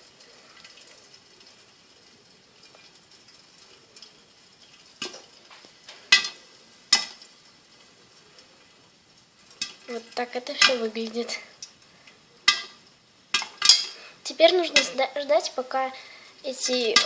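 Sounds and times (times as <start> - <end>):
oil sizzling: 0.0 - 17.0
popcorn kernels popping: 2.6 - 7.6, 9.4 - 11.8, 12.4 - 15.1, 16.6 - 17.0.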